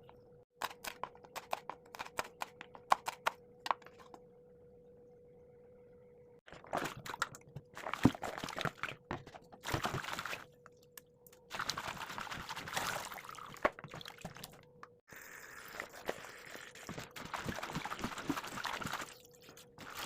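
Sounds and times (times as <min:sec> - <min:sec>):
liquid pouring and splashing: 0:06.5 - 0:10.5, 0:11.5 - 0:14.6, 0:15.2 - 0:20.0.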